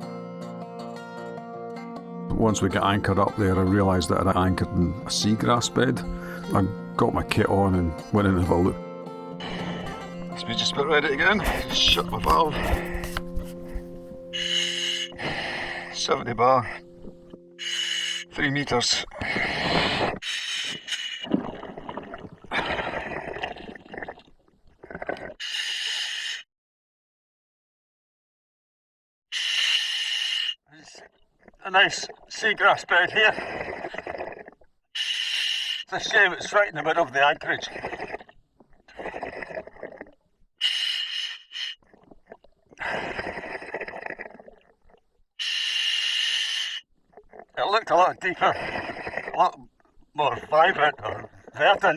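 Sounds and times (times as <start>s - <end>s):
exhaled bubbles gurgling: 21.3s - 25.4s, 41.8s - 45.0s, 48.5s - 49.4s.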